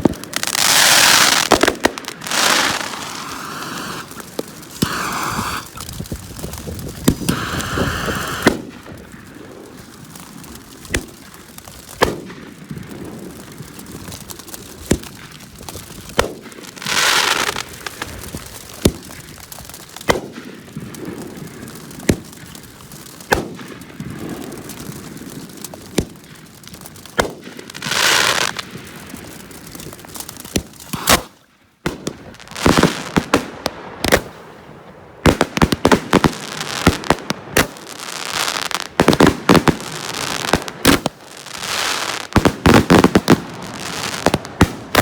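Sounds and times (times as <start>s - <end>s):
fireworks banging: 0.0s - 14.0s, 35.2s - 45.0s
fireworks rushing bursts: 0.0s - 34.6s, 35.2s - 45.0s.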